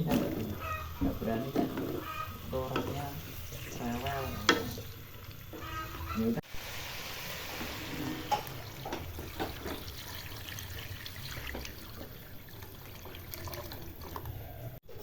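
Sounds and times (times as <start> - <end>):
utensil knocking: 0.1 - 3.2
water pouring into a pot: 6.4 - 14.8.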